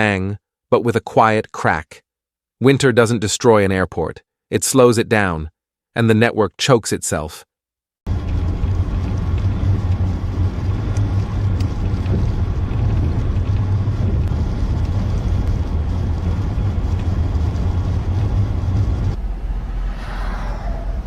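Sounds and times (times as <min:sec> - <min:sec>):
vehicle engine rumble: 0:08.1 - 0:21.0.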